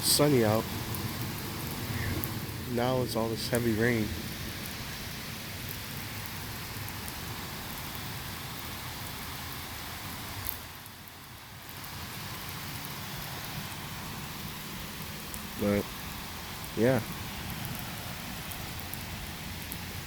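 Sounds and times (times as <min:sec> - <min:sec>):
heavy rain pouring: 0:00.0 - 0:20.0.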